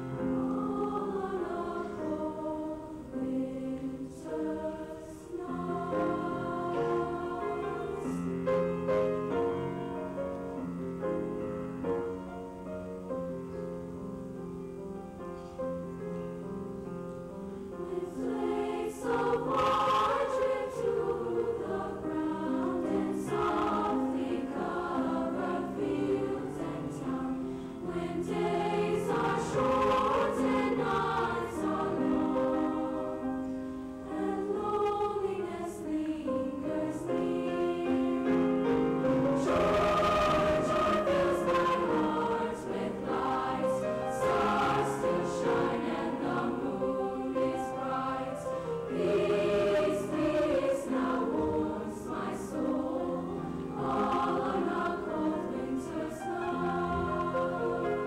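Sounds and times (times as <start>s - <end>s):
choir singing: 0.0s - 13.4s, 17.3s - 58.0s
piano accompaniment: 0.0s - 58.0s.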